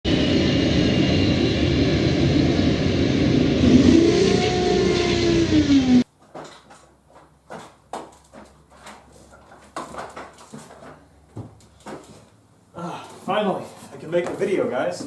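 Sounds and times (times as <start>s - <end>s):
loud motor running: 0.1s - 6.0s.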